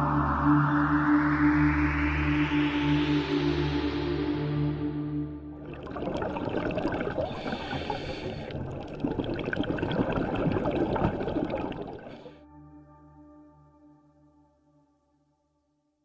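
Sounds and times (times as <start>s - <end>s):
water bubbling and gurgling: 5.5s - 12.4s.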